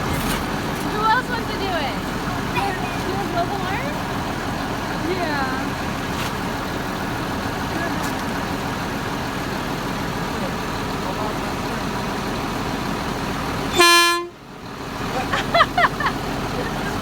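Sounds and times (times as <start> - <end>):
truck engine running: 0.0 - 17.0
truck horn blast: 13.7 - 14.4.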